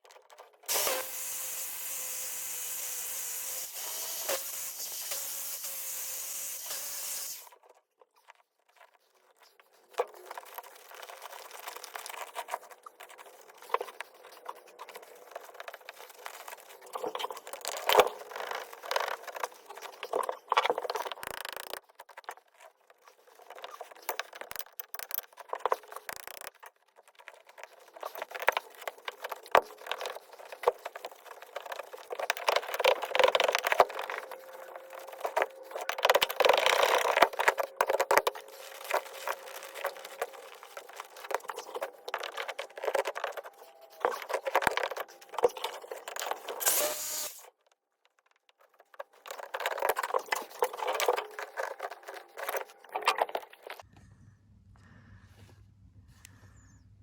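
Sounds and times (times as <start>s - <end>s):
power drill running: 0.7s - 7.5s, 46.6s - 47.4s
scraping and rubbing: 8.1s - 47.4s.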